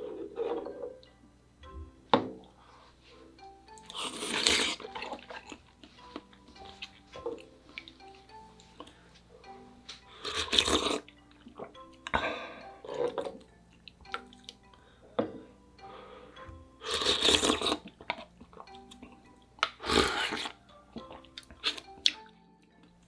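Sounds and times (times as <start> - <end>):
faint background music: 0.0 - 23.0
slurping and chewing noodles: 3.7 - 9.1, 10.1 - 14.6, 16.2 - 23.0.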